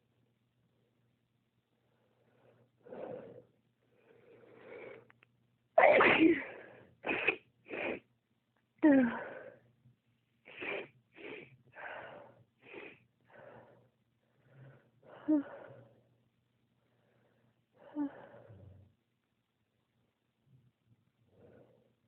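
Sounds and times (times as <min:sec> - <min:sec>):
woman sneezing: 0:05.8 - 0:08.0.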